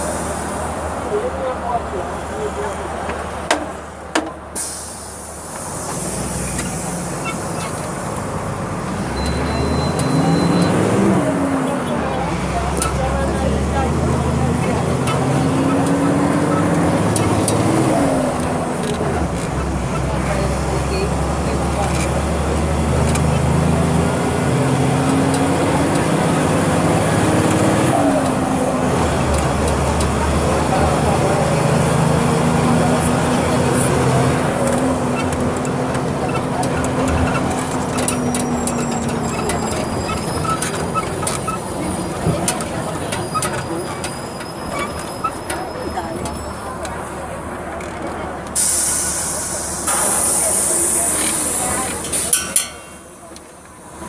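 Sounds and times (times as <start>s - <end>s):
diesel bus engine droning: 0.0s - 54.0s
hiss: 4.6s - 8.0s, 48.6s - 52.4s.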